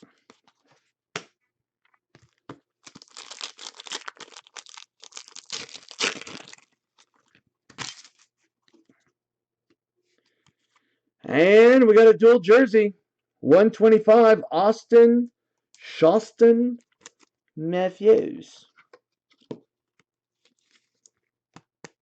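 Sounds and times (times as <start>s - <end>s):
wrapper tearing and crinkling: 2.8s - 8.3s.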